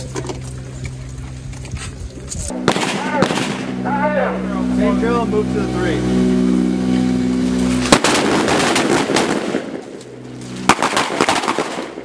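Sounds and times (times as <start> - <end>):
low steady hum: 0.0 - 12.0
rapid rifle shots: 7.9 - 9.8, 10.7 - 12.0.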